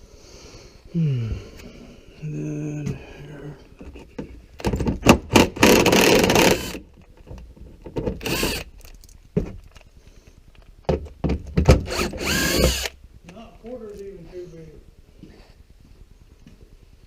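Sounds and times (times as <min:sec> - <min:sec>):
cordless drill whining: 0:05.6 - 0:06.8, 0:08.2 - 0:08.7, 0:11.8 - 0:13.0.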